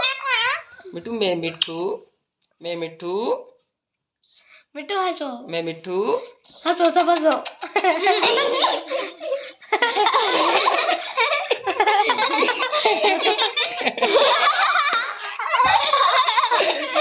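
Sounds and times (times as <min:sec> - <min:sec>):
people laughing loudly: 0:00.0 - 0:00.9, 0:06.7 - 0:17.0.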